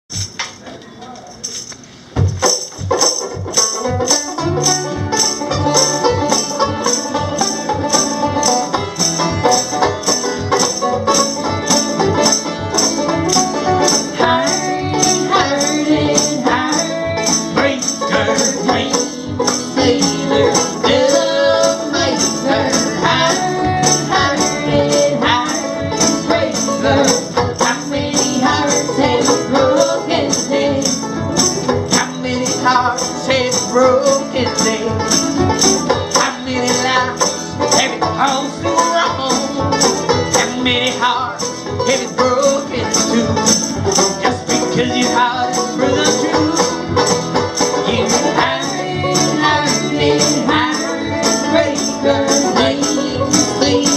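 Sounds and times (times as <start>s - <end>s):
live band playing upbeat music: 0.1s - 53.9s.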